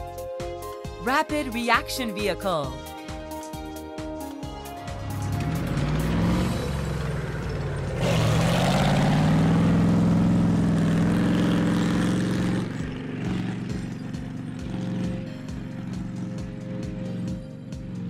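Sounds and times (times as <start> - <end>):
vehicle engine revving: 4.5 - 18.0.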